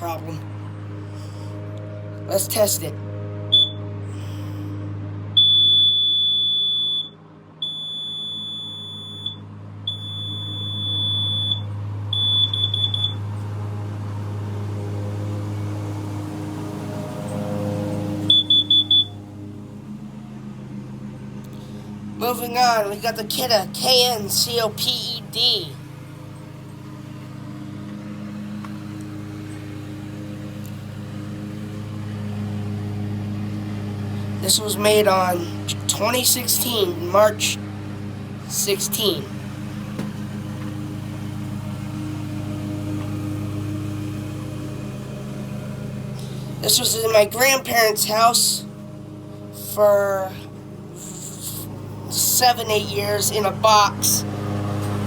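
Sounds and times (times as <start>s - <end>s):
low machine hum: 0.0s - 55.0s
alarm beeps: 3.5s - 3.8s, 5.4s - 13.2s, 18.3s - 19.2s
alarm short chirps: 3.5s - 3.8s, 5.4s - 13.2s, 18.3s - 19.2s.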